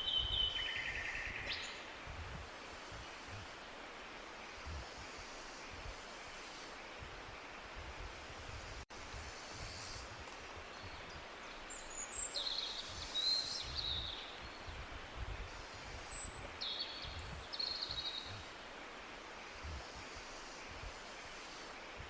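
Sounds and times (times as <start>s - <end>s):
tropical birds trilling: 0.0s - 2.0s
waterfall hiss: 0.0s - 22.0s.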